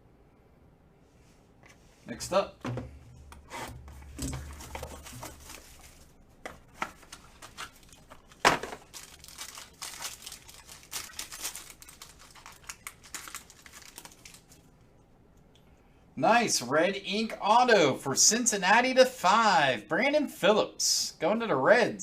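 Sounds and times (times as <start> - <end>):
packaging crinkling: 4.2 - 14.7
packaging tearing: 4.6 - 6.1, 6.9 - 14.7.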